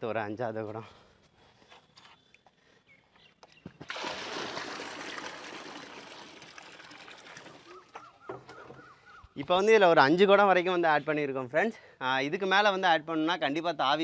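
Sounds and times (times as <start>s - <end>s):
water pouring into tank: 3.9s - 7.9s.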